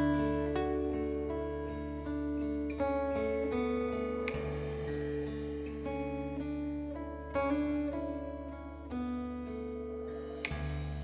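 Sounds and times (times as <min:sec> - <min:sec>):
acoustic guitar jazz ballad: 0:00.0 - 0:11.0.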